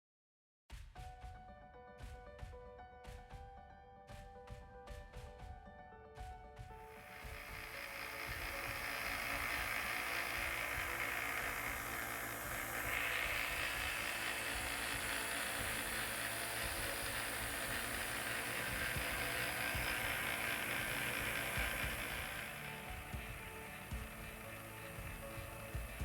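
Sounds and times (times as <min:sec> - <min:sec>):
belt grinder whirring: 0:06.9 - 0:26.0.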